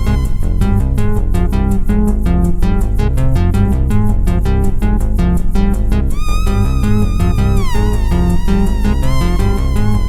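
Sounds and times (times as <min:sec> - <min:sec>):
synth bass line: 0:00.0 - 0:03.9, 0:06.0 - 0:10.0
sequenced synth notes: 0:06.1 - 0:10.0.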